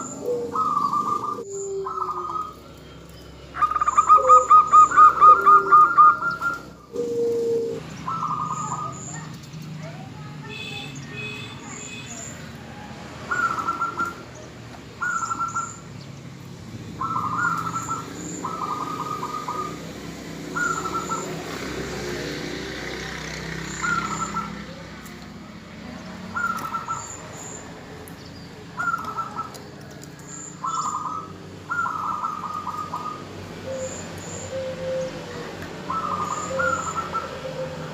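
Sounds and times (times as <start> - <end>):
dove cooing: 0.0 - 2.8, 3.5 - 9.4, 12.7 - 14.3, 15.0 - 15.8, 17.0 - 24.9, 26.2 - 27.2, 28.7 - 37.9.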